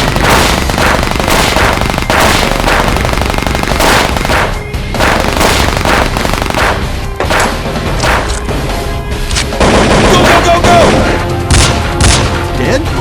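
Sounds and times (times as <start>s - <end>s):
automatic gunfire: 0.0s - 8.4s
loud blasts: 0.0s - 8.4s
background music: 0.0s - 13.0s.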